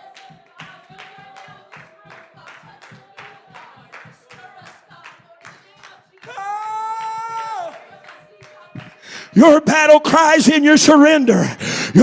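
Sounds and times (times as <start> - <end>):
congregation clapping rhythmically: 0.0 - 12.0.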